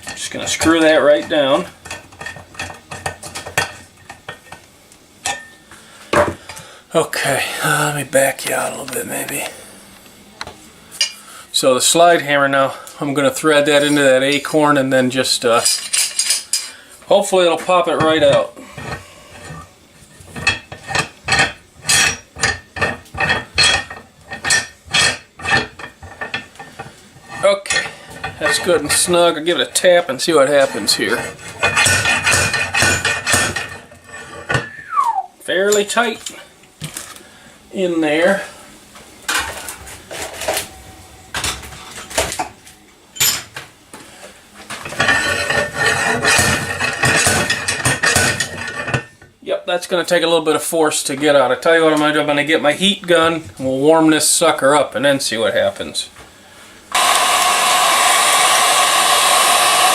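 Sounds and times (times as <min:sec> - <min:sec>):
metal clinking and scraping: 0:15.5 - 0:16.8, 0:30.5 - 0:34.7, 0:44.8 - 0:49.2.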